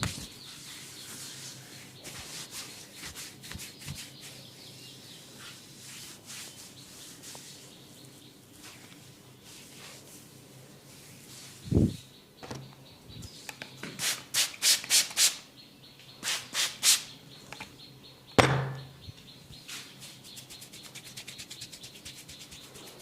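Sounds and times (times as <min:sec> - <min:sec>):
hands rubbing on skin: 0:00.0 - 0:10.3, 0:19.7 - 0:23.0.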